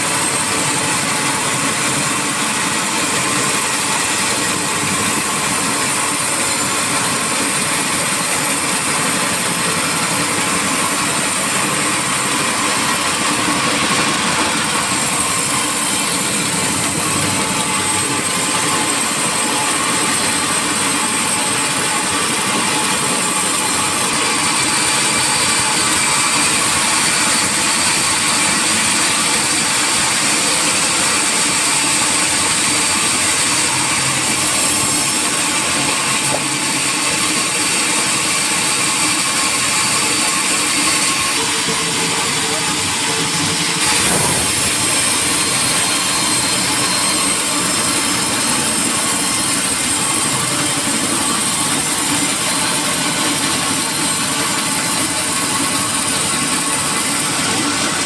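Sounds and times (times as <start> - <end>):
sawmill saw running with hiss: 0.0 - 58.0.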